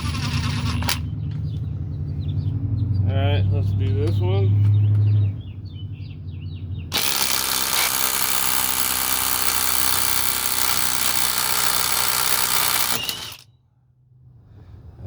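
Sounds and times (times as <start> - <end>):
impact wrench hammering: 6.9 - 13.4.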